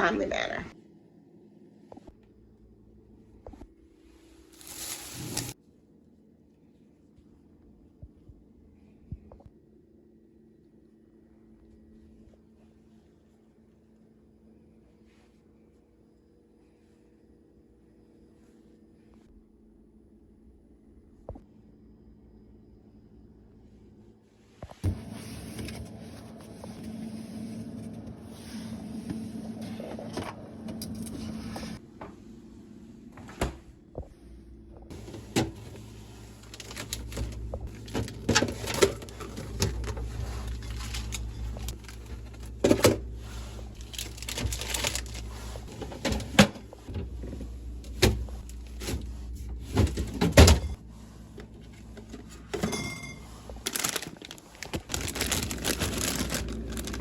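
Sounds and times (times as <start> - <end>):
steady low hum: 0.0 - 57.0
groceries knocking and thudding: 34.9 - 50.8, 51.4 - 57.0.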